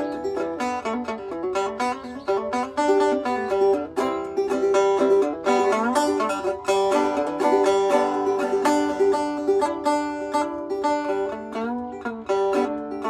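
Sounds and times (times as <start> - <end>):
banjo plucked notes: 0.0 - 13.0.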